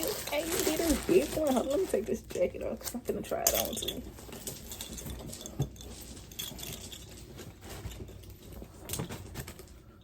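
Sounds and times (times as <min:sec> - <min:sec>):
fabric rustling: 0:00.0 - 0:02.6
small light clicks and clinks: 0:02.8 - 0:09.9.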